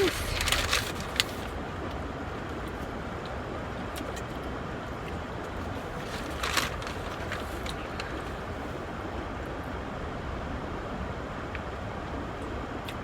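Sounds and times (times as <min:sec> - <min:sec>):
steady low rumble: 0:00.0 - 0:03.8
brief crackle: 0:06.0 - 0:08.2.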